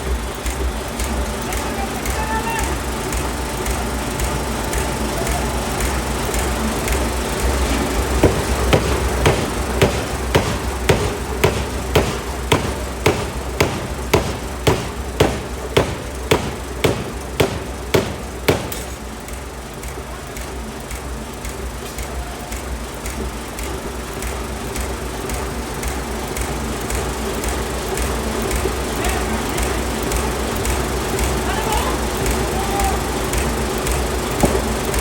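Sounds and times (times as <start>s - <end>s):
machinery low hum: 7.1s - 19.6s
forging hammer striking steel: 8.2s - 19.3s.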